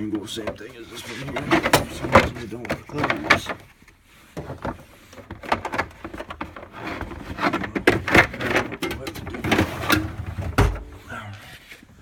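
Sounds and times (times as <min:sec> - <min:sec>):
metal tools clanking and rattling: 0:05.3 - 0:10.8.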